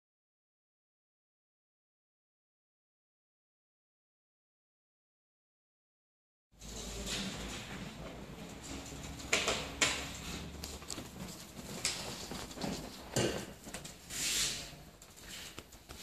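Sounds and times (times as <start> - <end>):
rustling of handled objects: 6.6 - 16.0.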